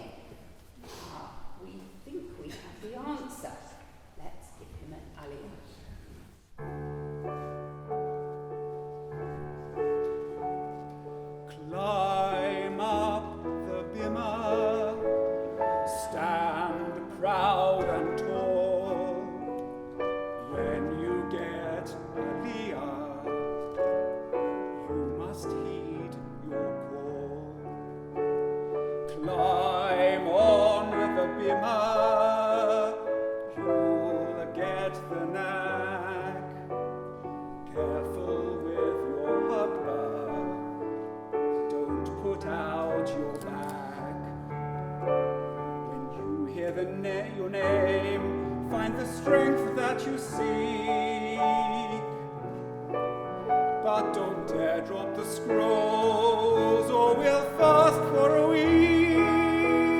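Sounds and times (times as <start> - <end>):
piano chords: 6.5 - 59.9
operatic singing with vibrato: 11.4 - 23.7, 29.1 - 36.9, 45.7 - 52.4, 53.4 - 59.9.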